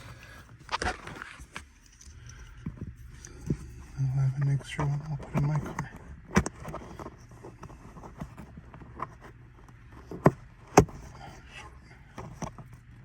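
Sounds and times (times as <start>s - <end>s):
faint steady background noise: 0.0s - 13.0s
sharp knocks and clicks: 4.5s - 11.2s.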